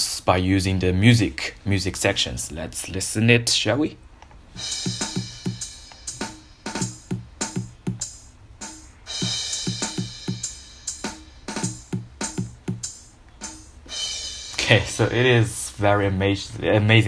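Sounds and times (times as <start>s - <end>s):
cymbal crash: 4.6s - 15.1s
drum machine beat: 4.6s - 15.1s.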